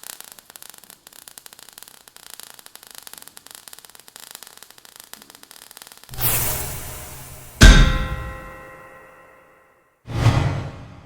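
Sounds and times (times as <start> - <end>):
crackling static: 0.0 - 7.4.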